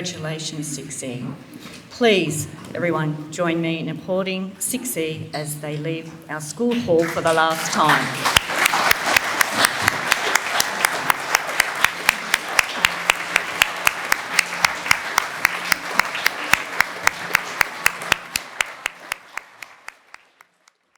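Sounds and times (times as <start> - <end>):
close steady clapping: 7.0 - 20.9
audience applauding: 7.5 - 20.9.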